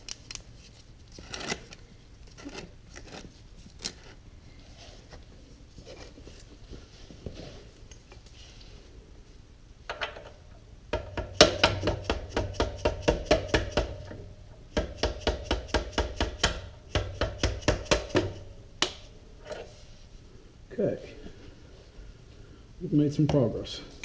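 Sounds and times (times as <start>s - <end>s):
hammer striking metal bar: 14.8s - 19.1s.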